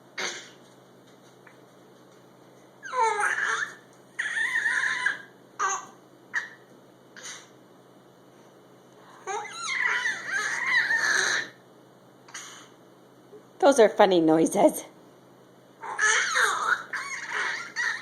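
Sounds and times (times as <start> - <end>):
high-pitched wavering vocal calls: 9.2 - 11.6, 15.8 - 18.0.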